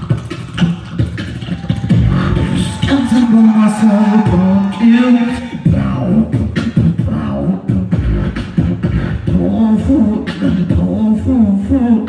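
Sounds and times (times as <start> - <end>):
boy beatboxing: 0.0 - 12.0
hummed vocal line: 1.9 - 12.0.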